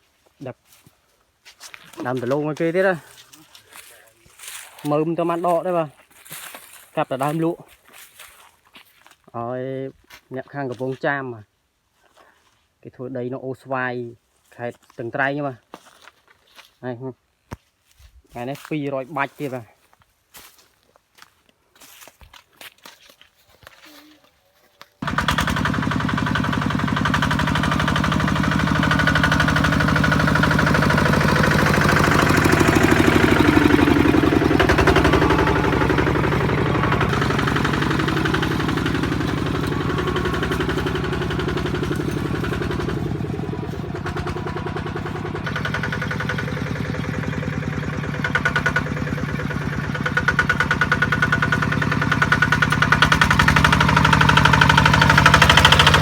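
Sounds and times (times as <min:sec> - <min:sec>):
diesel engine thudding: 0:25.0 - 0:56.0.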